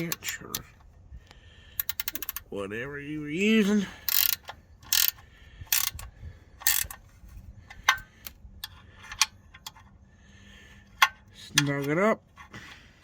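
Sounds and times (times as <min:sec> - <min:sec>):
ratchet wrench clicking: 0:01.8 - 0:02.5, 0:04.0 - 0:07.1.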